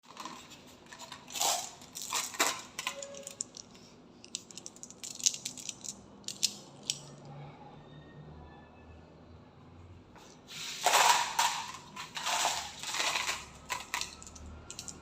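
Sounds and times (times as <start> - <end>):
marbles clattering on marble run: 10.9 - 15.0.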